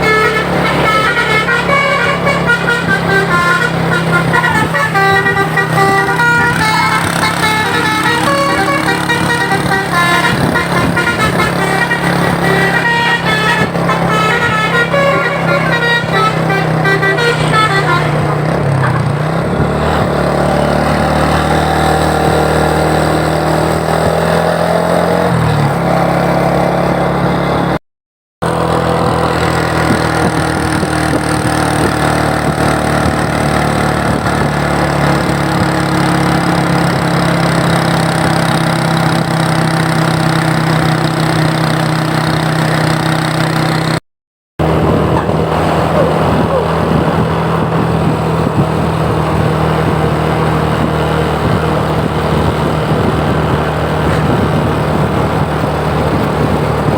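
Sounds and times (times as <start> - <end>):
bus horn playing changing tones: 0.0 - 20.0
bus engine running: 0.0 - 27.8, 28.4 - 44.0, 44.6 - 56.9.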